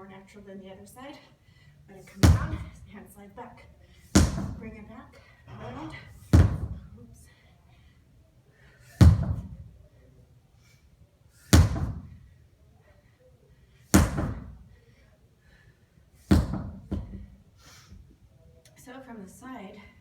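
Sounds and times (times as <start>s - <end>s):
sledgehammer striking a tire: 4.2s - 4.6s, 9.0s - 9.6s, 11.6s - 12.1s, 14.0s - 14.5s.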